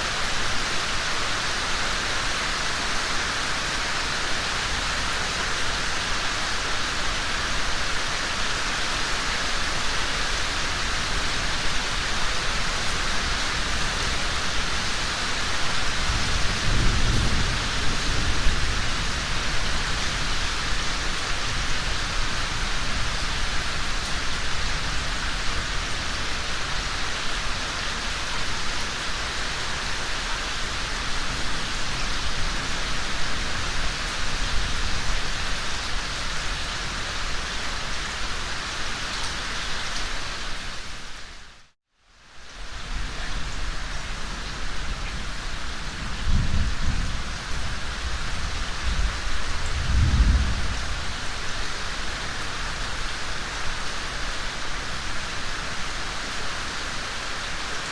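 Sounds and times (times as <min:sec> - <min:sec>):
rain falling: 0:00.0 - 0:57.9
thunder rumble: 0:16.0 - 0:21.5, 0:45.3 - 0:52.0.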